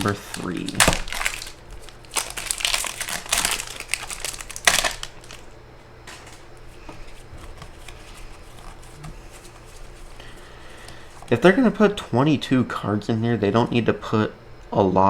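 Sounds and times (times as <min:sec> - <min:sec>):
wrapper crinkling and tearing: 0:00.0 - 0:11.5
faint handling noise: 0:00.0 - 0:12.2.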